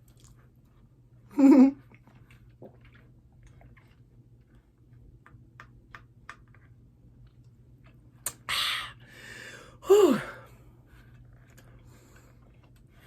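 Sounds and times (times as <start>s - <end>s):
mouth clicks and smacks chewing: 0.0s - 0.9s, 1.8s - 8.5s.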